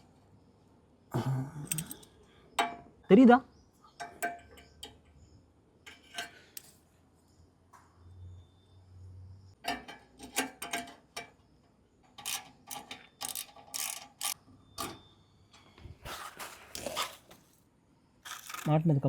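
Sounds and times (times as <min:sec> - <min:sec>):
metal clicks and scraping: 0:01.7 - 0:02.8, 0:05.9 - 0:06.8, 0:09.6 - 0:11.4, 0:12.0 - 0:15.0, 0:18.3 - 0:18.7.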